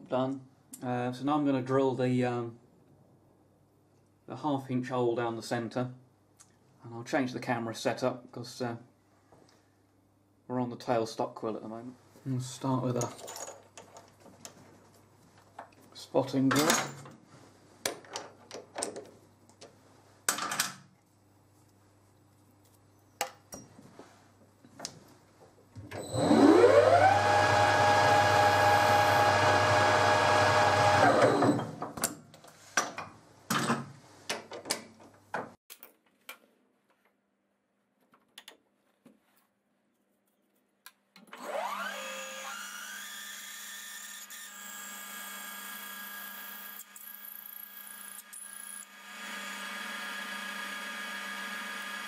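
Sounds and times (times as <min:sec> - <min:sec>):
lathe motor whine: 0:26.0 - 0:31.7, 0:48.8 - 0:52.0.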